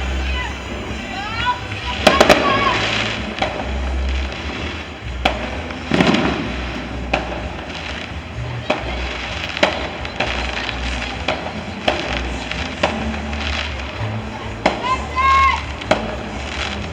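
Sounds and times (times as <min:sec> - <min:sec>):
fireworks bangs and pops: 0:00.0 - 0:15.0
firecracker crackle: 0:00.0 - 0:16.9.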